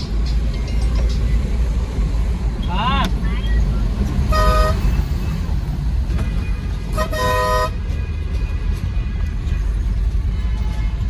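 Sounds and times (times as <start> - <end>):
road noise: 0.0 - 11.0
truck engine rumble: 0.0 - 11.0
vehicle horn toots: 4.3 - 5.0, 6.9 - 7.8.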